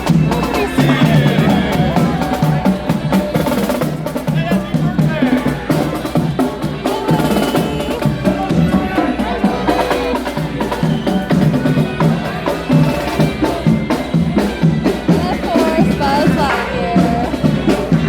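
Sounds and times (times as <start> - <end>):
music with drum beat: 0.0 - 18.0.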